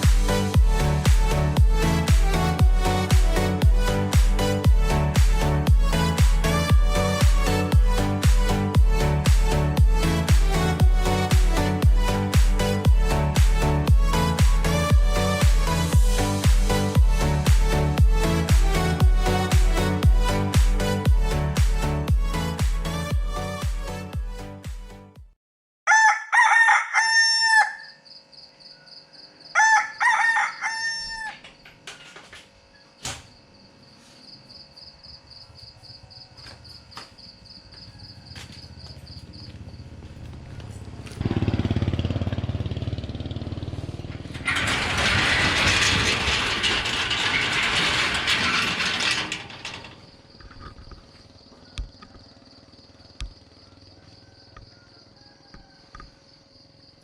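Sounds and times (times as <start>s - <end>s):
rooster crowing: 25.9s - 28.0s, 28.8s - 31.4s, 37.7s - 39.1s, 51.6s - 56.2s
high insect trill: 27.8s - 29.8s, 32.7s - 39.9s.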